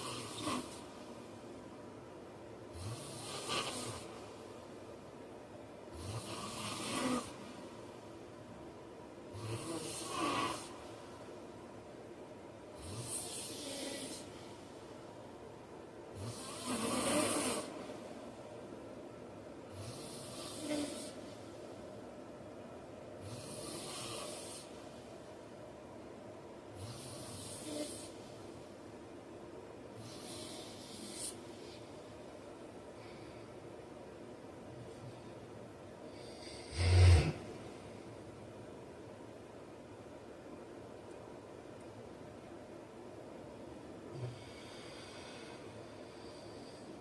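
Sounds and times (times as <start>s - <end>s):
man snoring: 0.0s - 0.8s, 2.7s - 4.2s, 6.0s - 7.4s, 9.3s - 10.8s, 12.8s - 14.3s, 16.1s - 17.9s, 19.7s - 21.2s, 23.2s - 24.8s, 26.8s - 28.2s, 36.1s - 37.5s.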